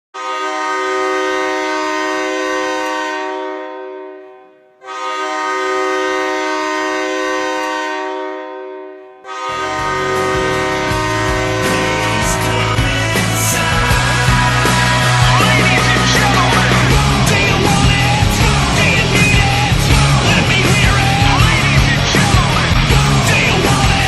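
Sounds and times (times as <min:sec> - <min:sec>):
hockey goal horn blasts: 0:00.2 - 0:13.6
music with heavy bass beat: 0:09.5 - 0:24.0.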